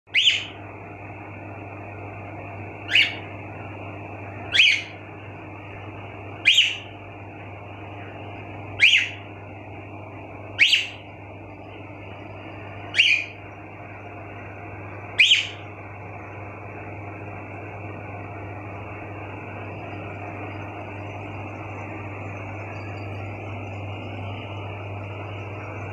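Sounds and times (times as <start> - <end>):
cockatiels whistling: 0.1 - 0.6, 2.8 - 3.3, 4.5 - 5.0, 6.4 - 6.9, 8.8 - 9.2, 10.6 - 11.0, 12.8 - 13.4, 15.1 - 15.7
low hum: 0.1 - 25.9.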